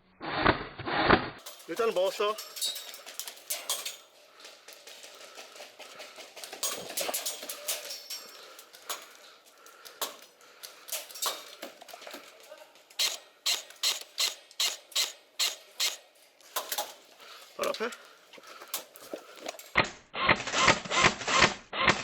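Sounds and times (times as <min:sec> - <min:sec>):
rustling: 0:01.4 - 0:19.8
fast sharp clicks: 0:12.9 - 0:16.0.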